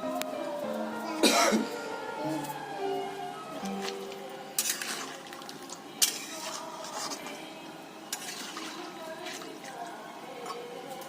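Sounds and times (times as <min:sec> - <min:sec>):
metal dishes and utensils clinking: 0:04.6 - 0:05.2, 0:06.0 - 0:07.4, 0:08.1 - 0:09.7.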